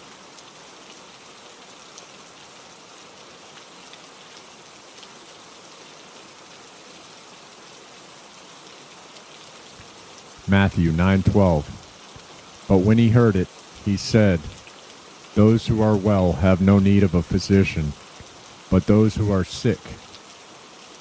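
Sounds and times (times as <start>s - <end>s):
steady rainfall: 0.0s - 21.0s
raindrop ticks: 9.1s - 20.9s.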